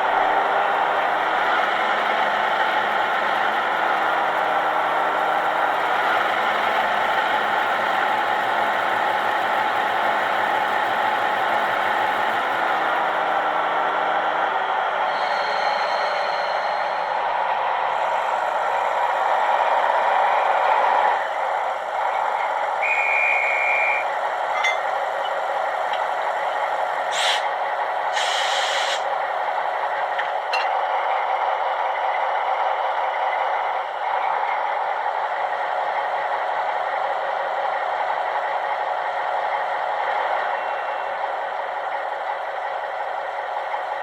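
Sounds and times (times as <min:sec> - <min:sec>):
diesel engine sound from small speaker: 0:00.0 - 0:17.4, 0:21.5 - 0:44.0
short hisses of air: 0:27.1 - 0:27.5, 0:28.1 - 0:29.0.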